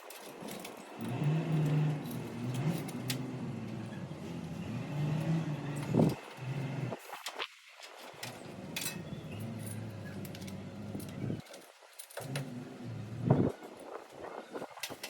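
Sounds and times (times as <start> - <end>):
engine humming: 0.9 - 7.0, 8.2 - 11.4.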